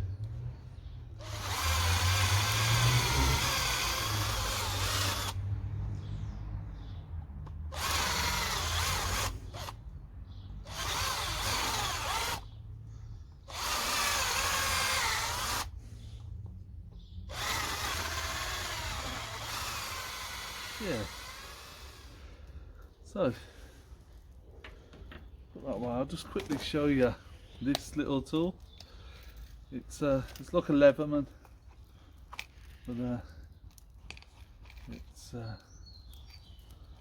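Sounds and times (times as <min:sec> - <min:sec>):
power tool cutting wood: 0:01.2 - 0:05.6, 0:07.7 - 0:09.8, 0:10.6 - 0:12.5, 0:13.4 - 0:15.8, 0:17.2 - 0:22.2.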